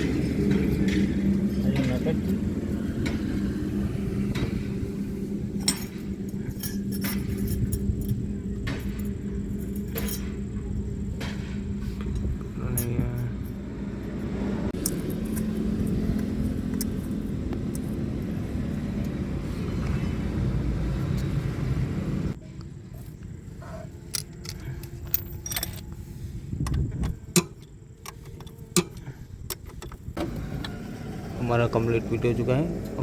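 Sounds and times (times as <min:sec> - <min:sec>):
steady low rumble: 0:00.0 - 0:30.2
metal tools clinking: 0:05.5 - 0:10.8, 0:11.8 - 0:14.2, 0:14.8 - 0:19.2, 0:22.9 - 0:30.0.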